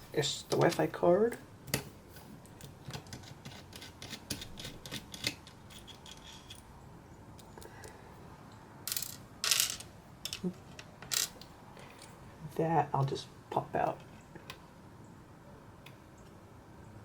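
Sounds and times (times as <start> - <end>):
small tools clicking: 2.4 - 6.7.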